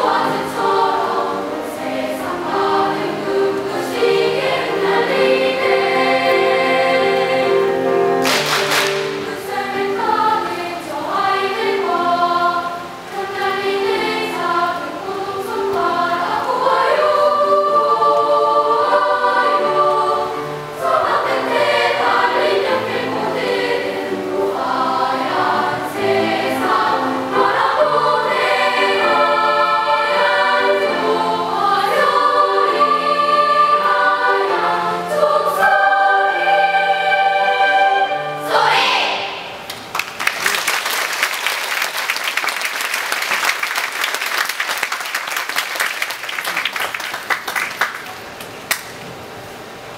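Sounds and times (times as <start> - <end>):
children's choir singing: 0.0 - 40.0.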